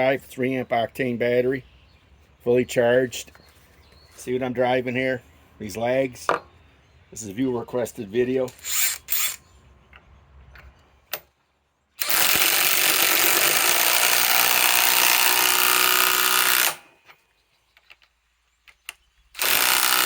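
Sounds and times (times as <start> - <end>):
impact wrench hammering screw: 12.0 - 16.9, 19.4 - 20.0.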